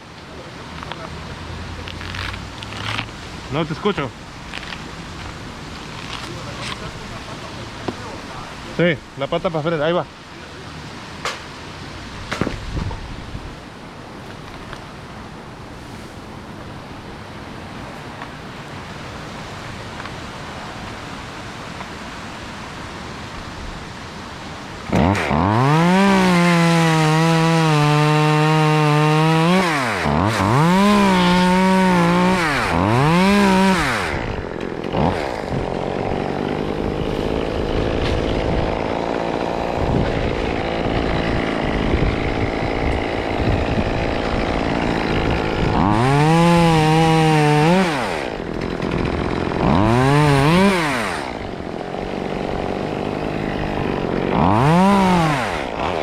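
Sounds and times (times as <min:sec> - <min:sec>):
chainsaw revving: 0:24.9 - 0:56.0.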